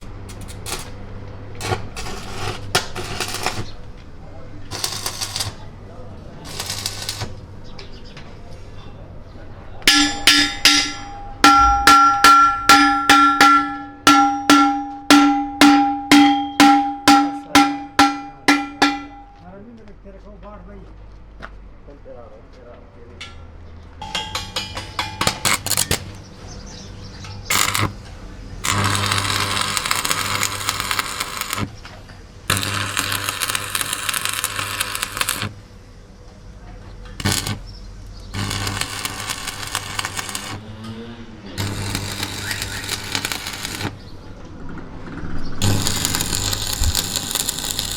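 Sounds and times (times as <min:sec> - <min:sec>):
harsh crackling metalwork: 0:00.0 - 0:07.6, 0:09.9 - 0:19.4, 0:24.0 - 0:26.3, 0:27.1 - 0:35.6, 0:37.0 - 0:47.9
hammer striking steel: 0:09.9 - 0:19.4, 0:24.0 - 0:26.1, 0:38.4 - 0:40.6, 0:41.6 - 0:44.0.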